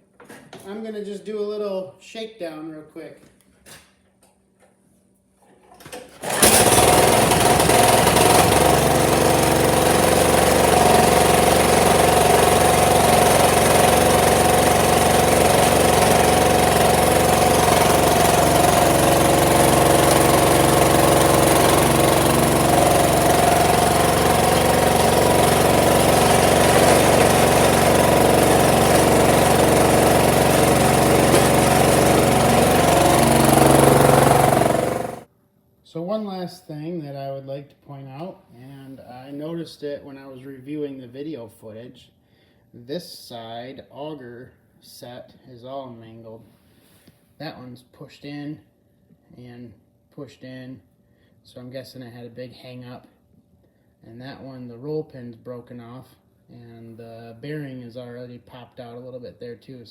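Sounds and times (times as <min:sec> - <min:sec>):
snowblower engine running: 0:06.2 - 0:35.3.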